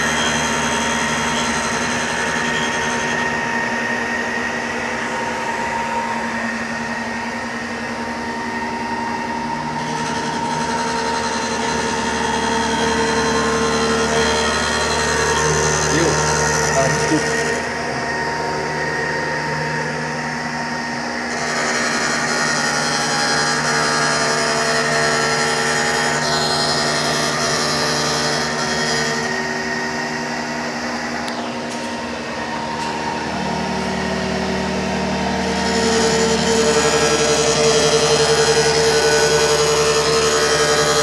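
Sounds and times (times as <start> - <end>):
grinding machine whine: 0.0 - 41.0.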